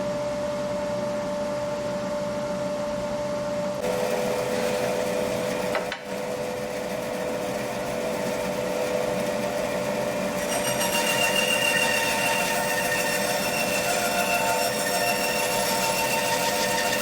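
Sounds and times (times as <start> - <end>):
bandsaw running: 3.8 - 17.0.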